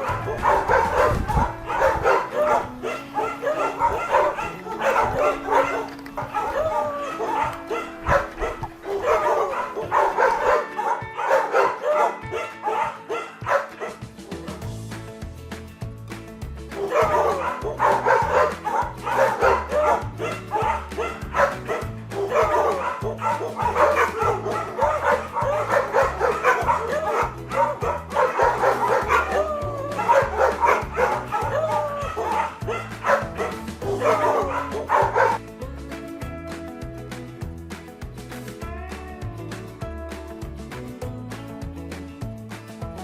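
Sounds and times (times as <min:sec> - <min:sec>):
dogs yipping and barking: 0:00.0 - 0:14.5, 0:16.7 - 0:35.4
background music with beat: 0:00.0 - 0:43.0.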